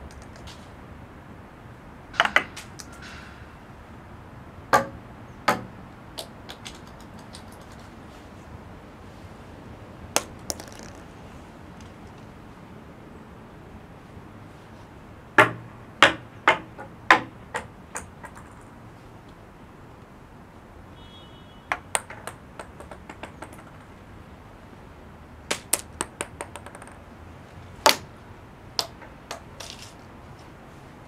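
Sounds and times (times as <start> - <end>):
acorns falling on stone: 0.0 - 0.6, 6.2 - 7.9, 10.2 - 12.3, 21.9 - 23.9, 25.5 - 27.0, 28.8 - 30.1.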